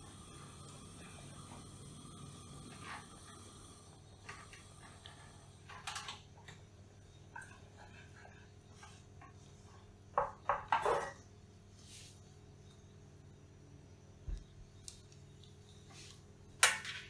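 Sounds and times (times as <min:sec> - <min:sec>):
utensils knocking against dishes: 0:10.2 - 0:11.2.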